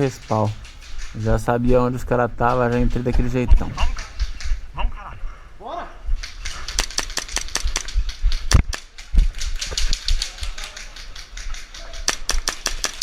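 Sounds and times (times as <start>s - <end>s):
airsoft rifle rapid shots: 6.2s - 13.0s.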